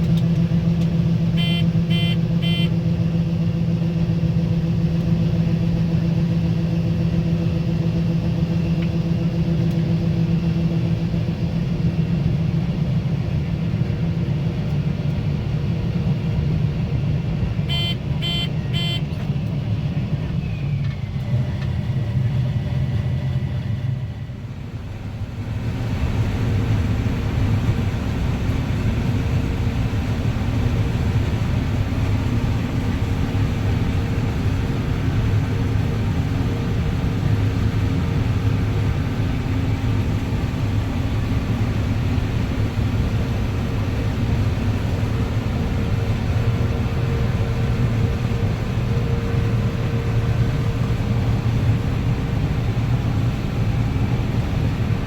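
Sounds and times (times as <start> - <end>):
combine harvester engine running: 0.0 - 55.0.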